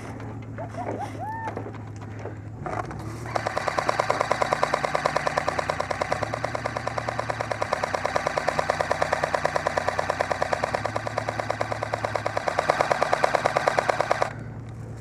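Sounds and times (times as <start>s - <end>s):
truck engine low hum: 0.0s - 15.0s
airsoft gun firing full-auto: 3.2s - 14.4s.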